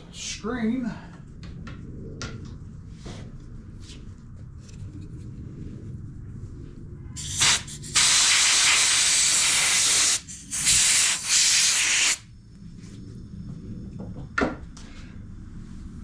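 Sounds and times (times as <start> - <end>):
compressed air blow gun hissing: 7.2 - 12.2.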